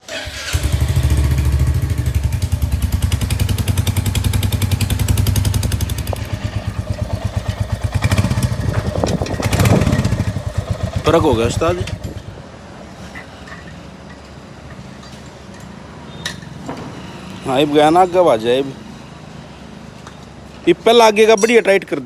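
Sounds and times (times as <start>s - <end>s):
motorcycle engine thumping: 0.4s - 12.4s.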